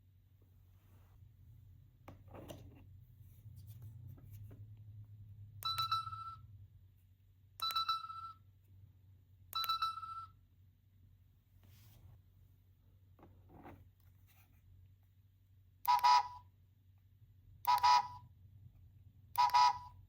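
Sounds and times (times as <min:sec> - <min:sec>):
toy speaker electronic tone: 0:15.9 - 0:16.4, 0:17.7 - 0:18.2, 0:19.4 - 0:20.0.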